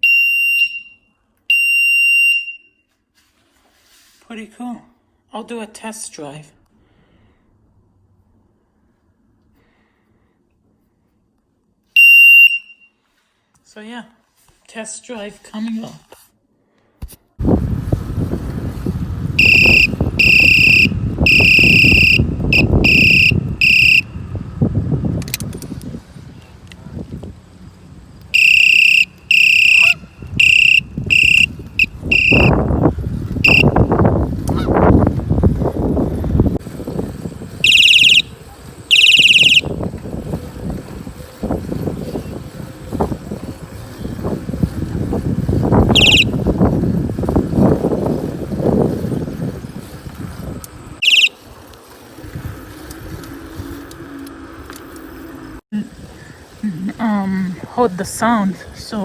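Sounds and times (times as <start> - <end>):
electric bike horn blasts: 12.0 - 12.9, 19.4 - 24.4, 28.3 - 34.8, 37.6 - 40.0, 45.8 - 46.8, 51.0 - 51.6
low rumble from riding bike: 17.4 - 58.9.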